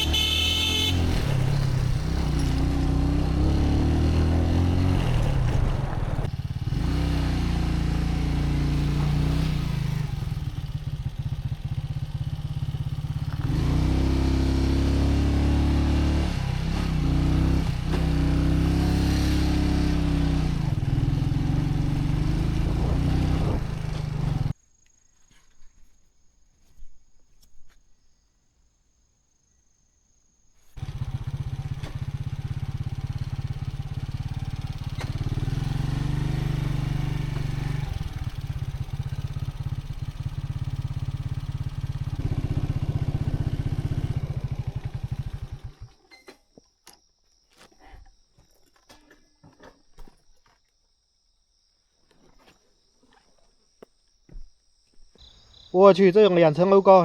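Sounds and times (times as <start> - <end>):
vehicle engine revving: 0.0 - 24.5, 30.8 - 45.9.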